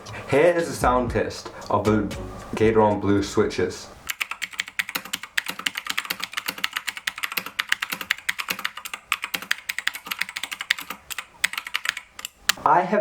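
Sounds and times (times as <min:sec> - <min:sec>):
mechanical keyboard typing: 0:04.1 - 0:12.6.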